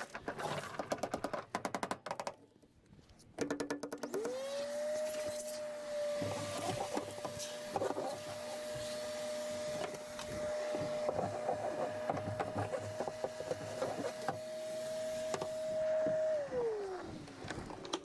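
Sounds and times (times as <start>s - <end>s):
shop vac whining: 4.2s - 18.0s.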